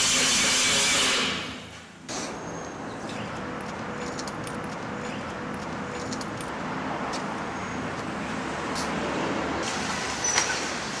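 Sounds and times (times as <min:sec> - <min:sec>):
mechanical background noise: 0:00.1 - 0:11.0.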